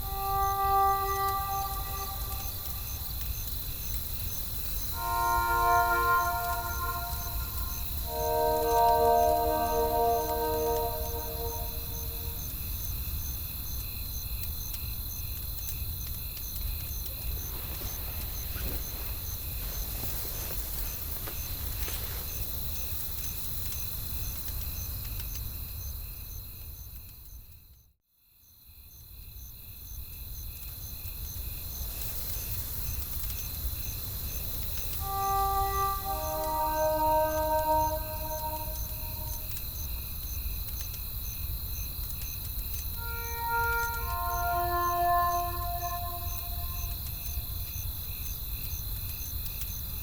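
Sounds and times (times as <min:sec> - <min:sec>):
crickets chirping: 0:00.0 - 0:12.6, 0:35.0 - 0:39.8, 0:42.7 - 0:47.4.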